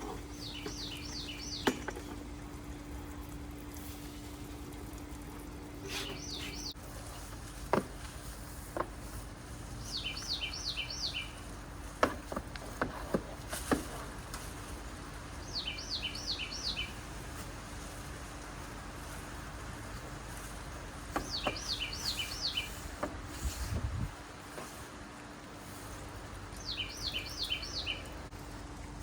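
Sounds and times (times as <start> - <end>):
songbird singing: 0.0 - 2.5, 5.8 - 8.1, 9.7 - 12.3, 15.2 - 17.4, 21.0 - 23.5, 25.2 - 28.3
sharp clicks and knocks: 1.6 - 2.2.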